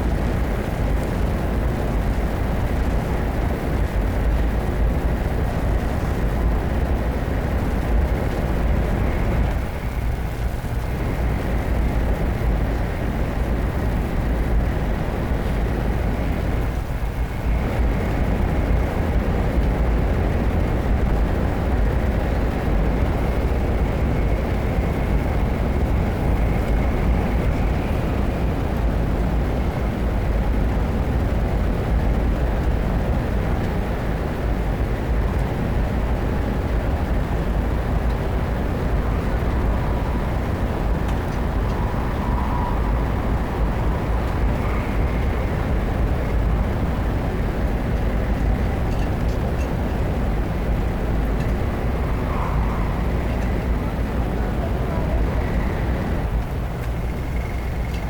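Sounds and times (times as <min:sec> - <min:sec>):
train carriage interior rumble: 0:00.0 - 0:58.0
faint high whine: 0:35.1 - 0:58.0.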